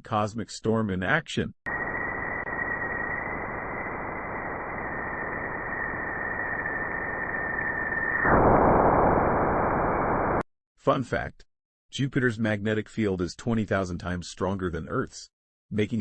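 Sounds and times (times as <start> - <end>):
high steady tone: 1.7 - 10.4.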